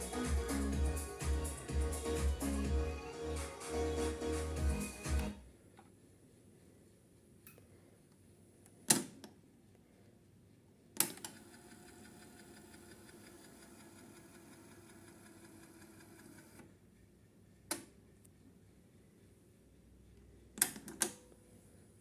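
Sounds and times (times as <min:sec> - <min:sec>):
cassette transport whirring: 0:11.2 - 0:16.6.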